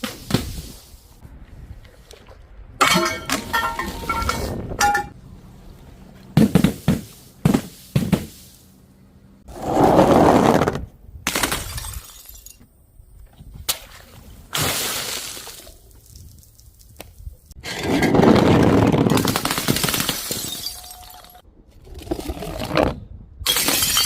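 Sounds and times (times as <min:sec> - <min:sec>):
glass bottles smashing: 0:02.8 - 0:05.2, 0:11.3 - 0:12.6, 0:19.6 - 0:21.4, 0:23.5 - 0:24.0.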